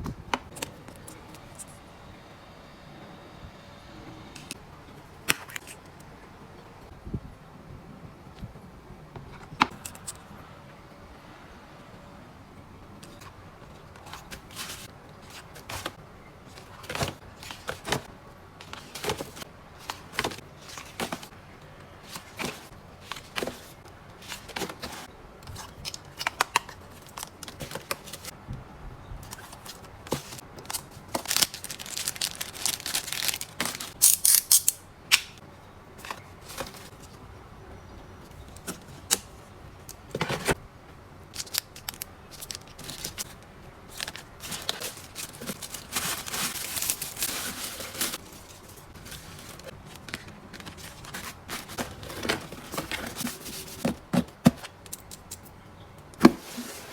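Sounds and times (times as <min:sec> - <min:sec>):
plastic crinkling and rustling: 0:29.2 - 0:34.7, 0:41.3 - 0:55.4.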